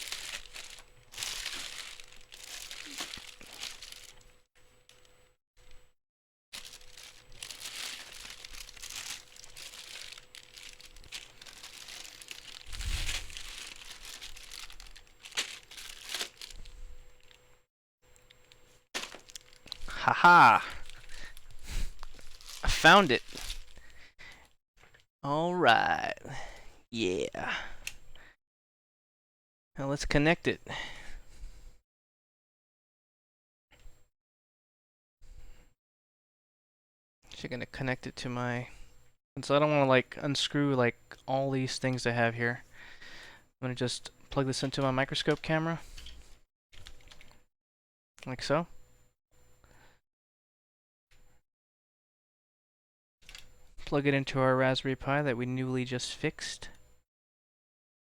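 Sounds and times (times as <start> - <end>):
crinkling and rustling: 0.0 - 4.3, 6.6 - 17.4, 18.4 - 24.0.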